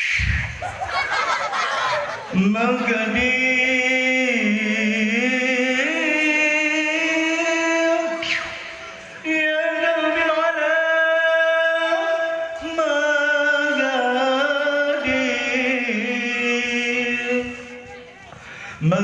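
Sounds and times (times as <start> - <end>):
man singing unaccompanied: 2.2 - 8.3, 9.2 - 17.8, 18.8 - 19.0.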